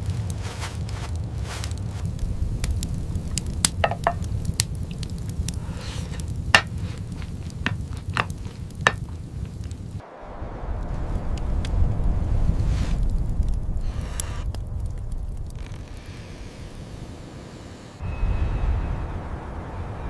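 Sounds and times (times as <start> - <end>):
sharp clicks and crackles: 0.0 - 10.0, 12.9 - 16.8
steady low rumble: 0.0 - 20.0.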